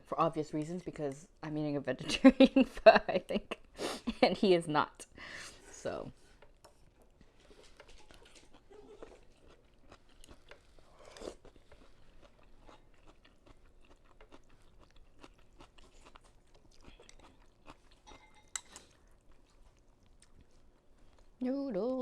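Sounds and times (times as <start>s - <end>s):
chewing and eating: 6.2s - 21.4s.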